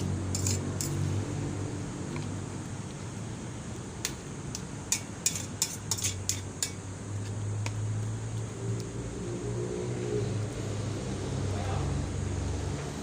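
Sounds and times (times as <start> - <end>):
utensil clinking against pot: 0.0 - 1.0, 4.9 - 6.8
steady low hum: 0.0 - 13.0.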